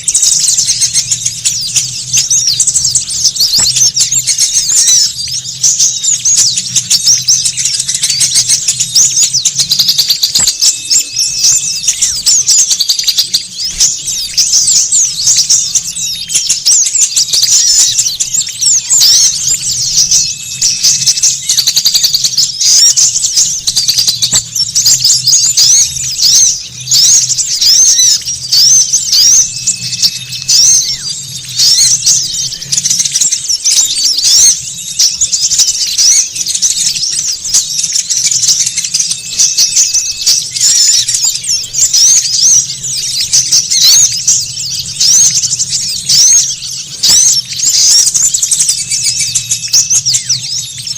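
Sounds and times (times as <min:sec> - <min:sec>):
small songbirds chirping: 0:00.0 - 0:50.9.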